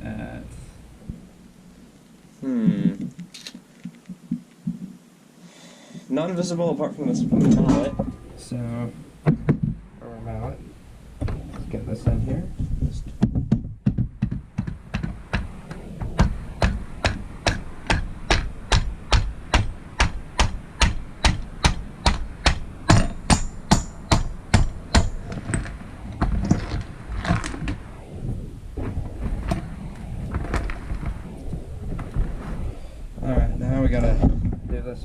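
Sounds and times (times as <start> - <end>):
knocks and handling noise: 3.0 - 5.0, 9.2 - 9.8, 11.2 - 35.0
mallet striking pump: 16.2 - 25.2.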